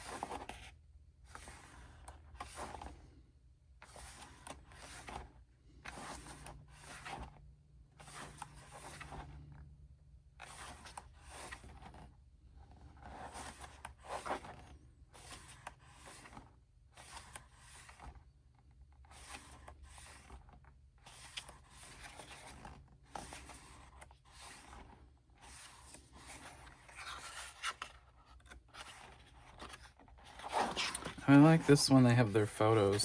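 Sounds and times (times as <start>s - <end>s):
pages being turned: 0.0s - 0.7s, 1.3s - 3.2s, 3.8s - 7.4s, 8.0s - 9.6s, 10.4s - 12.2s, 12.8s - 33.0s
paper rustling: 13.0s - 33.0s.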